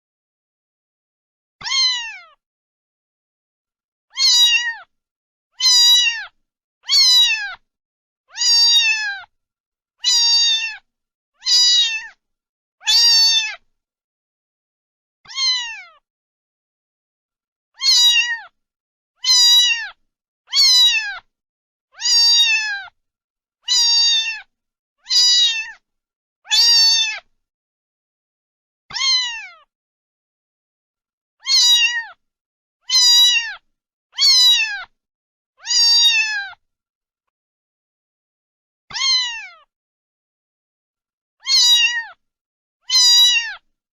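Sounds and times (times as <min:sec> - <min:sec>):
cat meowing: 0:01.6 - 0:02.4, 0:04.1 - 0:04.9, 0:05.6 - 0:07.6, 0:08.3 - 0:09.3, 0:10.0 - 0:12.2, 0:12.8 - 0:13.6, 0:15.3 - 0:16.0, 0:17.8 - 0:18.6, 0:19.2 - 0:21.3, 0:22.0 - 0:23.0, 0:23.6 - 0:25.8, 0:26.5 - 0:27.3, 0:28.9 - 0:29.7, 0:31.4 - 0:32.2, 0:32.8 - 0:34.9, 0:35.6 - 0:36.6, 0:38.9 - 0:39.7, 0:41.4 - 0:42.2, 0:42.8 - 0:43.7.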